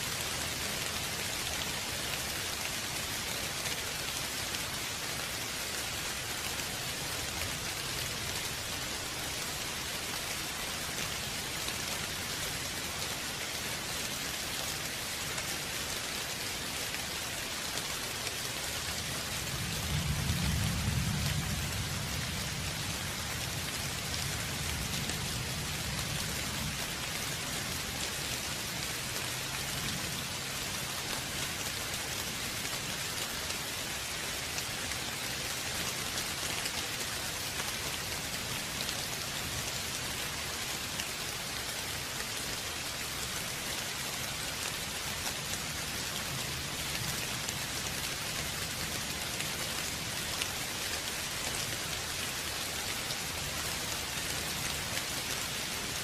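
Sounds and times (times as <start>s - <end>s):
rain pattering: 0.0s - 56.0s.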